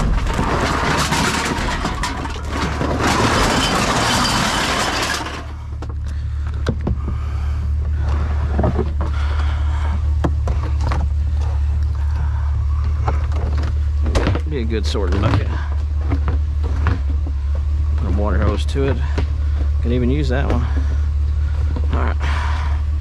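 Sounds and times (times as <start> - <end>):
trash rustling and clattering: 0.0 - 7.1
vehicle engine idling: 0.0 - 23.0.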